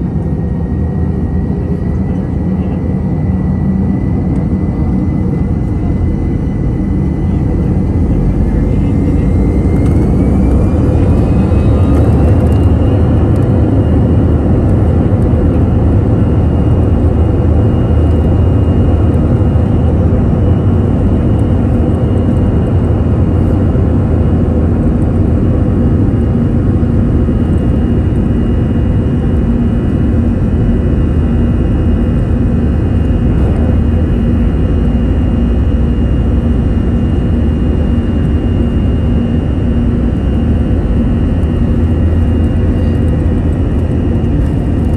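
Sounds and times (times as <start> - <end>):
deep jet engine rumble: 0.0 - 44.9
jet engine whine: 0.0 - 44.9.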